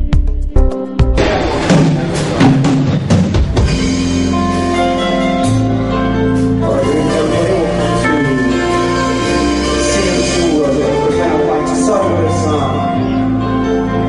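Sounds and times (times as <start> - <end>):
bass line: 0.0 - 14.0
drum hits: 1.0 - 4.3
band playing instrumental: 1.0 - 14.0.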